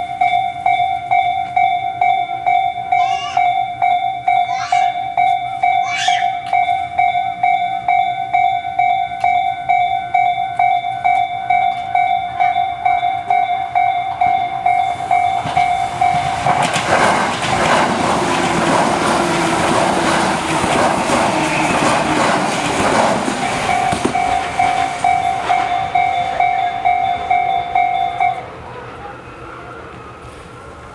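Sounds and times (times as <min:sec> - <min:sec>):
level crossing warning bell: 0:00.0 - 0:29.8
electric train passing: 0:00.0 - 0:30.9.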